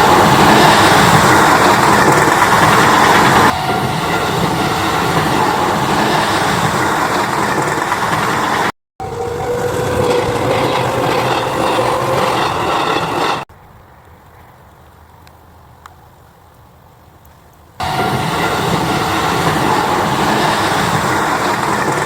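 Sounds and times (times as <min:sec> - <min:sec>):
train wheels rolling: 0:00.0 - 0:13.5, 0:17.8 - 0:22.0.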